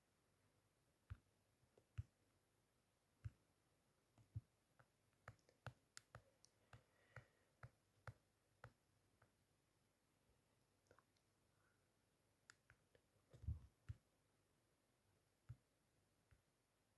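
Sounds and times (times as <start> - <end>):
faint clicks and light taps: 1.0 - 2.4, 3.1 - 9.6, 12.4 - 14.2, 15.4 - 16.6.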